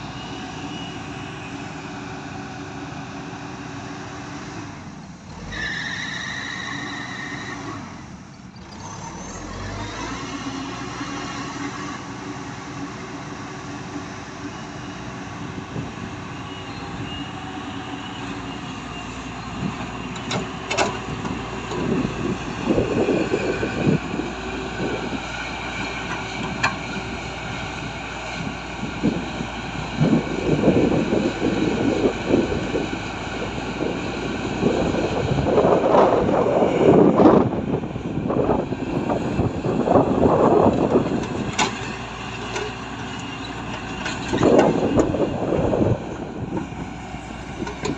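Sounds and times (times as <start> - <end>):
heavy machinery running: 10.7 - 47.9.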